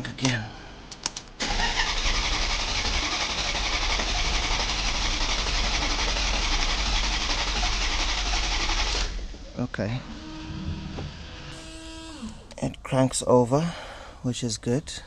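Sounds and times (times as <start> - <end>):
starter cranking car engine: 1.4 - 9.2.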